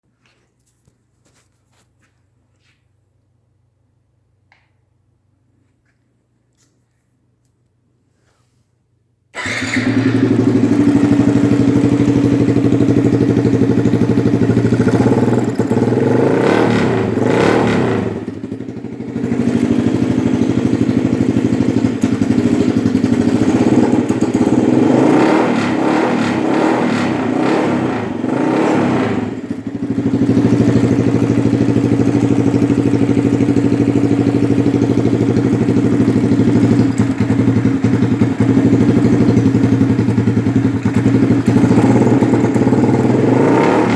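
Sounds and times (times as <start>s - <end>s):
car engine idling and revving: 9.4s - 43.9s.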